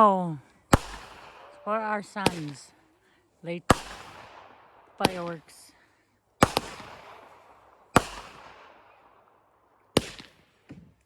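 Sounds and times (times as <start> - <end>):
fireworks bangs: 0.7 - 2.8, 3.6 - 5.8, 6.4 - 9.2, 9.9 - 11.0.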